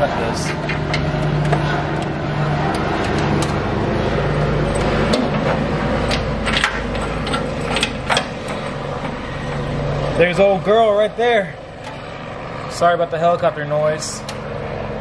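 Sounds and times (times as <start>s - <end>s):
helicopter drone: 0.0s - 6.5s.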